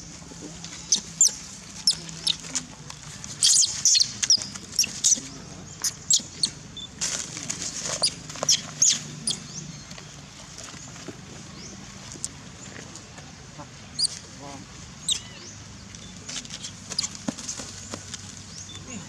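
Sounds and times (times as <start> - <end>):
small pet squeaking: 3.4 - 5.2, 14.0 - 14.2.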